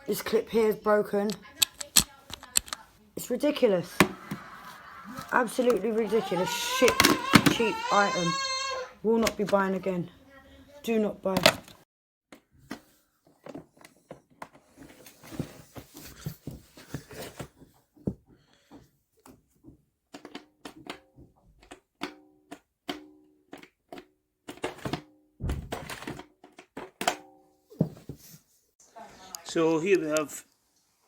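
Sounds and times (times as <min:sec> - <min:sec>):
plastic knocks and clicks: 0:05.1 - 0:08.1, 0:11.3 - 0:12.8.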